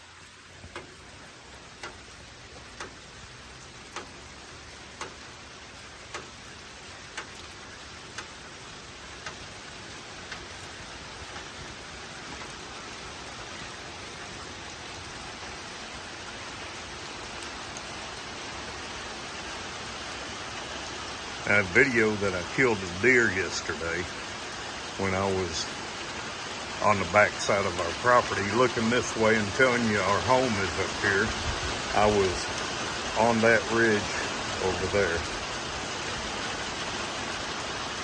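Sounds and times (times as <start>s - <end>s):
rain drumming on a tin roof: 0.0s - 38.0s
sharp ticks: 0.7s - 4.4s.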